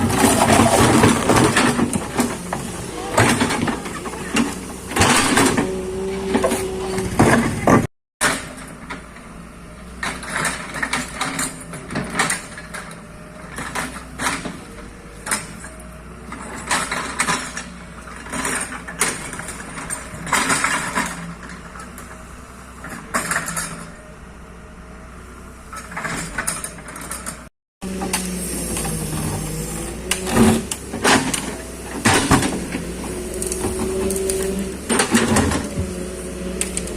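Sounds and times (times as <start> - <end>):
metal clanks and scrapes: 0.0 - 9.2, 22.8 - 24.0, 25.7 - 36.9
excavator engine hum: 0.0 - 36.9.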